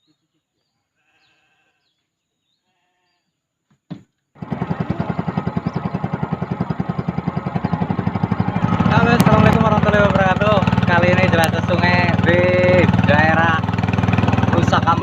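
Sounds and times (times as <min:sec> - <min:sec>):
small engine puttering: 0:04.4 - 0:15.0.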